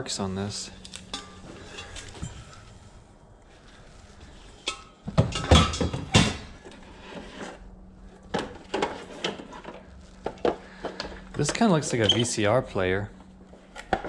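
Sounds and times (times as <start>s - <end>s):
items knocking and clattering: 5.0s - 6.8s.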